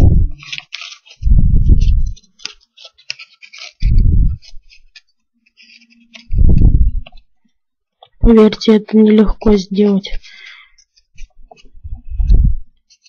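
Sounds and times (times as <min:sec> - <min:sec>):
paper crackling and rustling: 0:00.0 - 0:07.4, 0:12.8 - 0:13.0.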